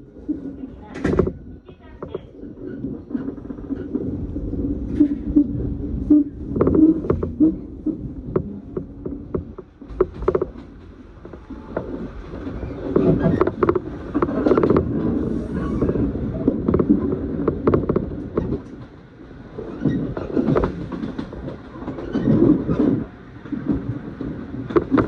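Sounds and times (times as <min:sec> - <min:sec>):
train rumble inside passenger car: 0:00.0 - 0:25.0
wheels clicking on rails: 0:00.0 - 0:25.0.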